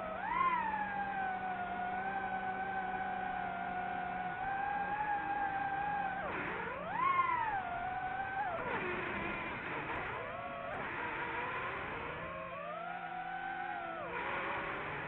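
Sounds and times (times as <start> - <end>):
drone motors whining: 0.0 - 15.0.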